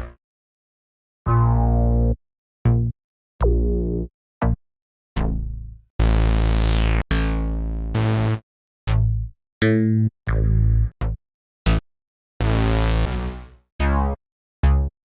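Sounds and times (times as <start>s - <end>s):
drum machine and synth hits: 6.0s - 7.3s, 8.0s - 8.4s.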